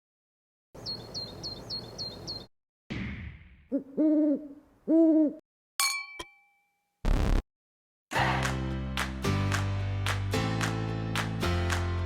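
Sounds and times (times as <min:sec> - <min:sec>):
owl hooting: 0:03.7 - 0:05.4.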